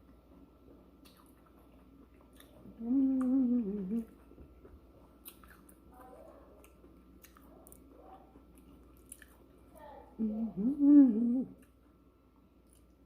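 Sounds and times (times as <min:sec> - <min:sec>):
person humming: 0:02.8 - 0:04.1, 0:10.2 - 0:11.6
person chewing crunchy chips: 0:05.2 - 0:07.9, 0:08.5 - 0:09.6.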